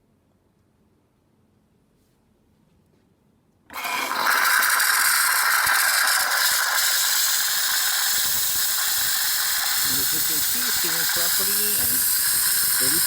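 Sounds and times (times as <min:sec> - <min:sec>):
steam wand rushing steam: 0:03.8 - 0:13.0.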